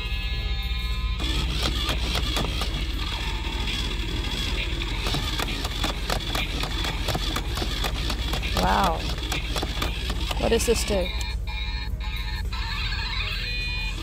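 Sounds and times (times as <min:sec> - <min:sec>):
toy motor whirring: 0:00.0 - 0:14.0
toy sound effects: 0:00.2 - 0:14.0
rapid irregular clicking: 0:01.2 - 0:10.7.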